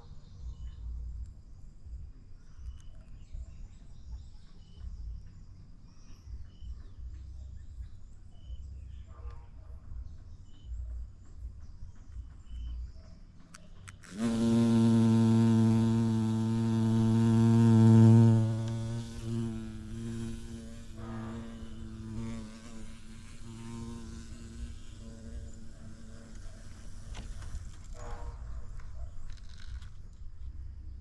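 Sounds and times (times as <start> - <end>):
bumblebee buzzing: 13.9 - 28.0.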